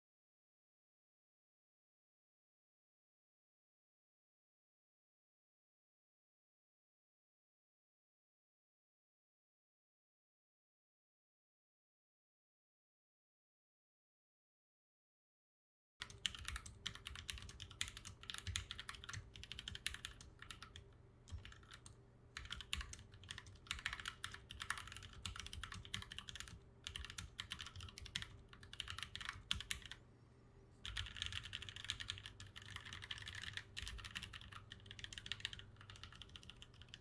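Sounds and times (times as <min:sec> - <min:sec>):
mechanical keyboard typing: 0:16.0 - 0:30.0, 0:30.8 - 0:37.0.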